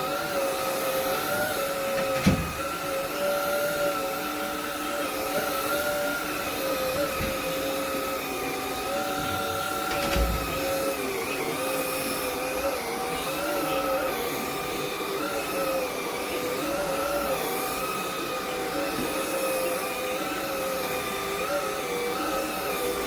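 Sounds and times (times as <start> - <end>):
vacuum cleaner motor whine: 0.0 - 23.0.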